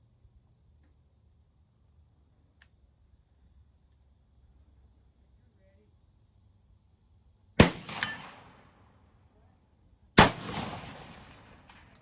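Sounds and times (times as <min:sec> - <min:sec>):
gunshots with echo: 0:07.6 - 0:08.6, 0:10.2 - 0:11.9.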